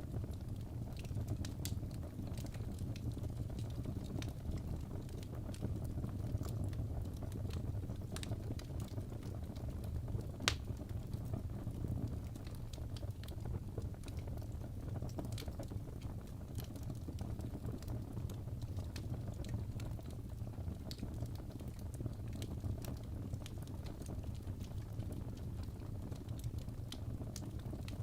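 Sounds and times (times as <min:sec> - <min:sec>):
fire crackling: 0:00.0 - 0:28.0
low rumble of flame: 0:00.0 - 0:28.0
sharp pops of fire: 0:10.4 - 0:10.8.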